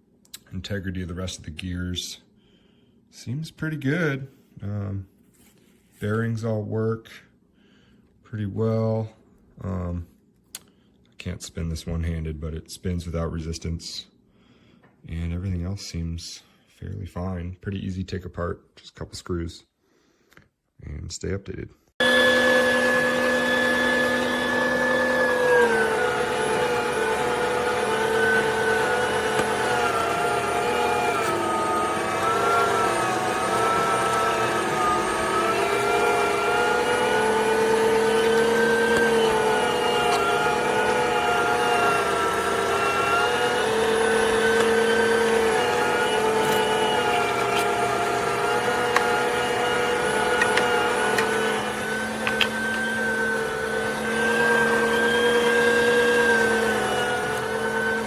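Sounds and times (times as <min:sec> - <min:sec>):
meat grinder motor whine: 0:22.0 - 0:58.0.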